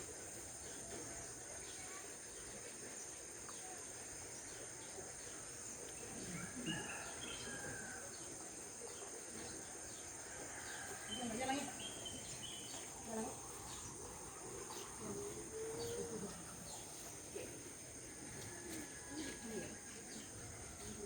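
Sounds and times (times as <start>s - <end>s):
faint bird chirps: 8.8s - 17.1s.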